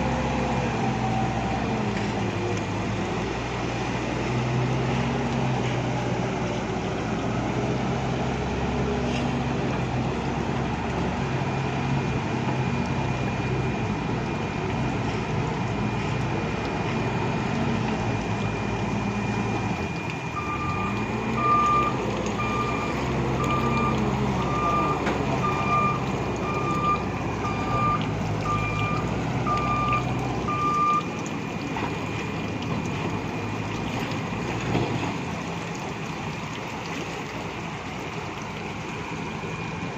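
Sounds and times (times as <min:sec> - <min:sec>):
backhoe diesel engine running: 0:00.0 - 0:39.9
reverse alarm beeping: 0:18.4 - 0:31.2.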